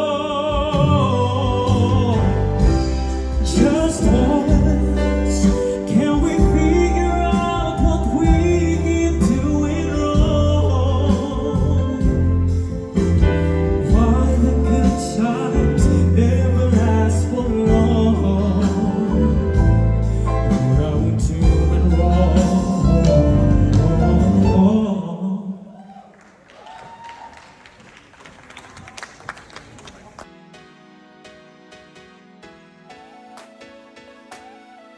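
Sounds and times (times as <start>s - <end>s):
karaoke backing track: 0.0s - 25.4s, 30.5s - 34.9s
man singing slow ballad: 0.0s - 25.8s.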